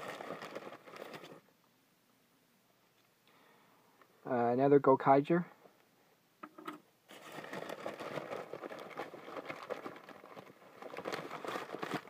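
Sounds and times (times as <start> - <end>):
paper wrapping crinkling: 0.0 - 1.5, 7.1 - 12.0.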